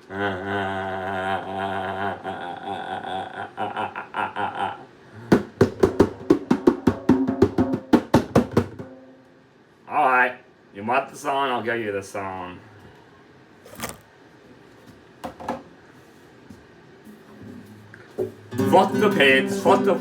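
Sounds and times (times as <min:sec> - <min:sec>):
man humming a drone: 0:00.0 - 0:03.7.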